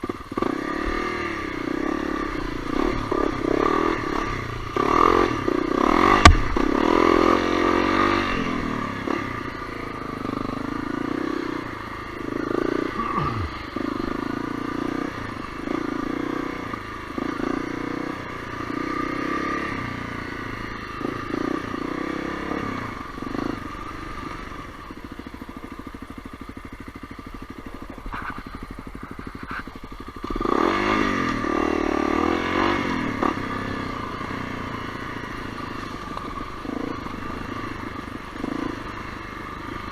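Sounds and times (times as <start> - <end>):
motorcycle engine revving: 0.0 - 39.9
sharp knock: 6.1 - 6.7.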